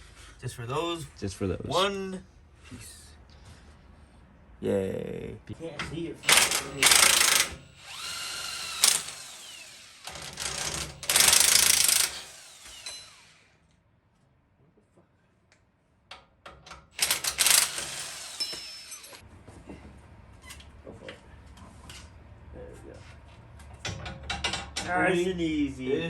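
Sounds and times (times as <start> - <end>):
cordless power tool whirring: 6.2 - 13.5, 17.0 - 19.2.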